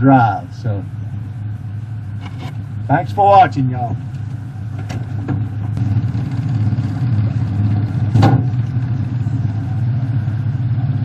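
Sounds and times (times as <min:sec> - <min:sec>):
vehicle engine running: 0:00.0 - 0:11.0.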